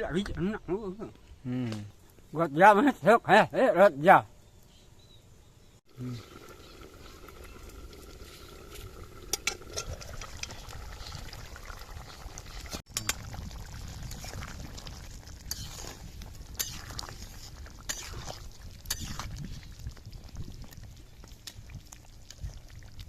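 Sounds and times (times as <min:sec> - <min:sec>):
liquid bubbling and sloshing: 0:05.9 - 0:23.0.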